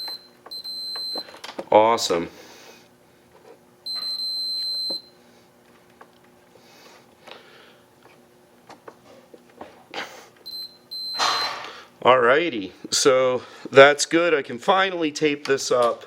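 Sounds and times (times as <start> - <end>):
multimeter beeping: 0.0 - 1.4, 3.8 - 5.2, 10.5 - 11.6.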